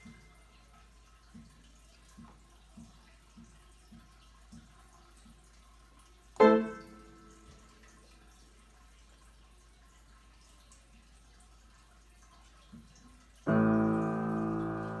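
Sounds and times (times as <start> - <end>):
piano chord ringing: 6.4 - 7.5, 13.5 - 15.0.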